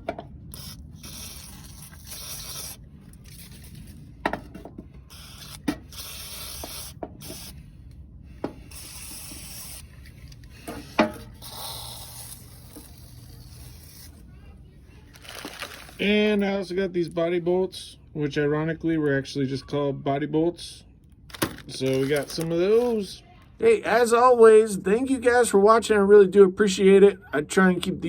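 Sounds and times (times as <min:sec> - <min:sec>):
aerosol can spraying: 0:00.5 - 0:02.8, 0:05.1 - 0:07.6, 0:08.6 - 0:09.9.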